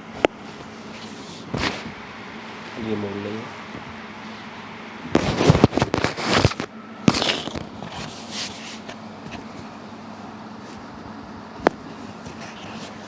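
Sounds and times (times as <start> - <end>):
foot joints cracking and popping: 5.1 - 8.1.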